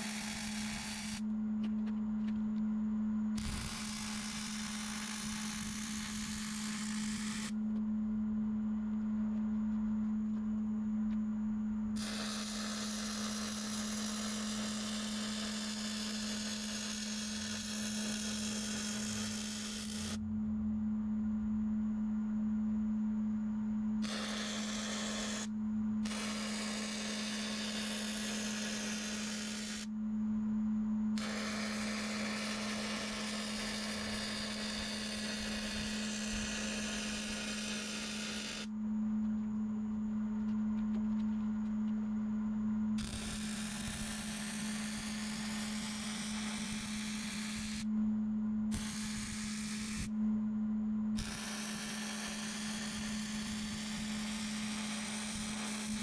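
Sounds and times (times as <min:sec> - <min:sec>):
harsh hissing noise: 0:00.0 - 0:01.2, 0:03.4 - 0:07.6, 0:12.0 - 0:20.2, 0:24.0 - 0:29.9, 0:31.2 - 0:38.7, 0:43.0 - 0:47.9, 0:48.7 - 0:50.1, 0:51.2 - 0:56.0
steady low hum: 0:00.0 - 0:56.0.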